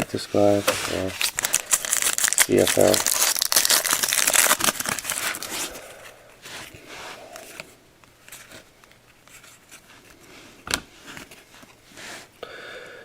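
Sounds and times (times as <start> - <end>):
cards sliding and flipping: 0.4 - 3.1
wrapper crinkling: 1.0 - 5.8.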